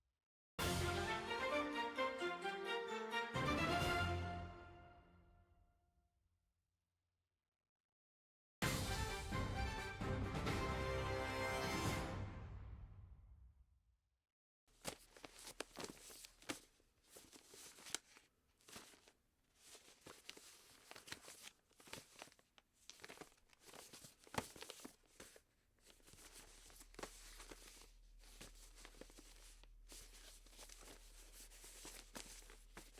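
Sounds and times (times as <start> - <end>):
faint rustling and clicking: 14.7 - 32.9.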